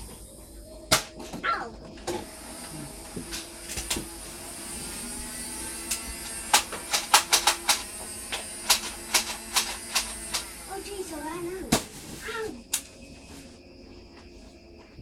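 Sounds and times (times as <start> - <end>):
plastic toy blaster clacks: 3.3 - 4.1, 5.9 - 10.5.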